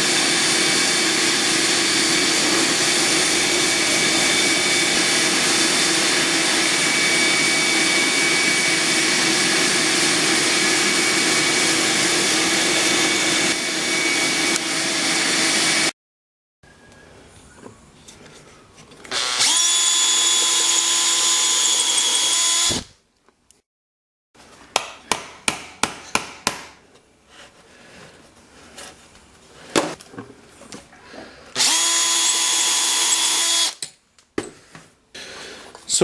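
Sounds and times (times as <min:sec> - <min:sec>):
electric drill boring wood: 0:00.0 - 0:15.9, 0:19.1 - 0:22.9, 0:31.5 - 0:33.8.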